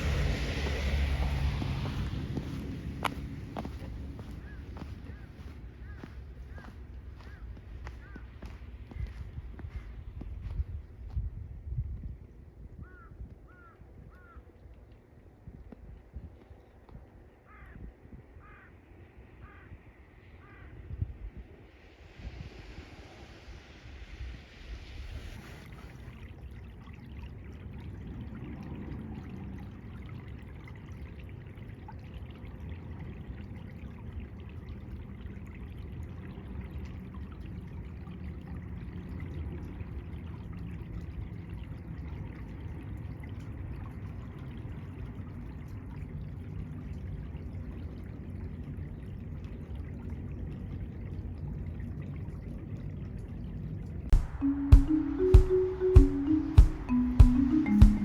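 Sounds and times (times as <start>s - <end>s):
meltwater trickling: 0.0s - 10.6s.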